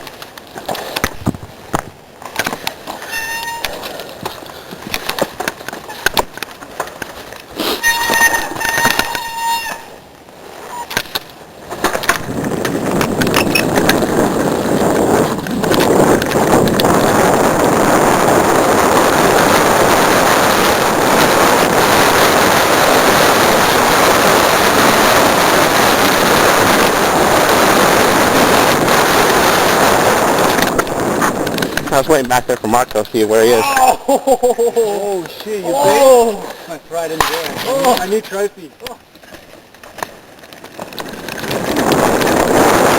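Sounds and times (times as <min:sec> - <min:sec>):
bike tyre rumble on dirt: 0:00.0 - 0:33.6, 0:34.2 - 0:42.9
wind noise: 0:00.0 - 0:42.9.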